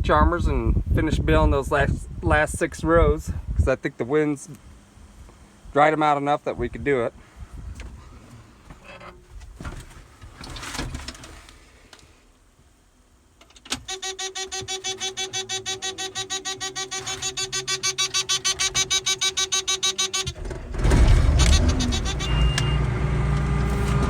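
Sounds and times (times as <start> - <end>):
warning buzzer beeping rapidly: 13.9 - 20.4, 21.0 - 22.9.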